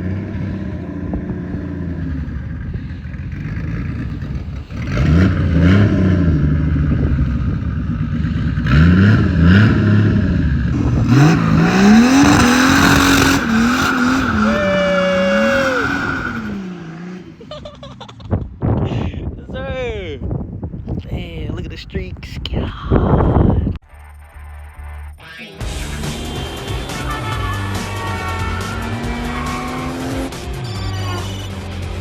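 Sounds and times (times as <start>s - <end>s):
car engine revving: 0.0s - 17.9s, 23.9s - 32.0s
high squeal: 11.2s - 16.7s.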